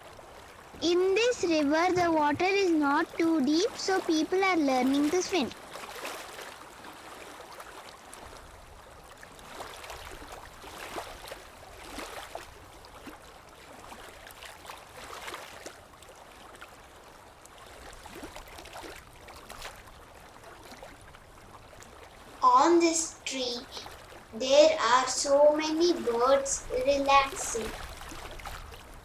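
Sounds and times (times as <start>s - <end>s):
small splashes and trickles: 0.0s - 0.8s, 3.0s - 22.4s, 23.7s - 24.4s, 27.2s - 29.0s
river water running: 0.0s - 29.0s.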